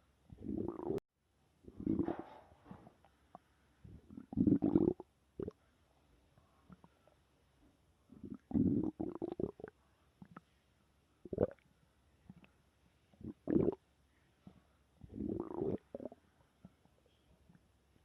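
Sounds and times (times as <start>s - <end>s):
stomach growling and gurgling: 0.3s - 1.0s, 1.7s - 2.3s, 3.3s - 5.6s, 8.1s - 10.5s, 11.3s - 11.6s, 13.1s - 13.8s, 15.0s - 16.2s.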